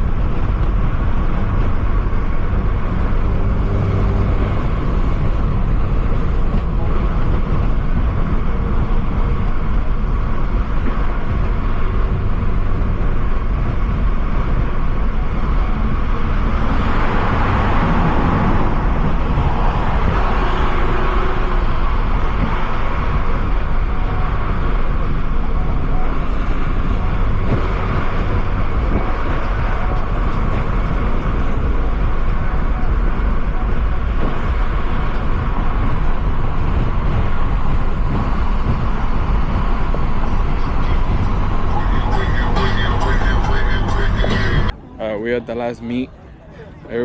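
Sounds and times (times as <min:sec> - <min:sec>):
car engine rumble: 0:00.0 - 0:47.0
road noise: 0:00.0 - 0:47.0
rushing swell: 0:11.8 - 0:44.8.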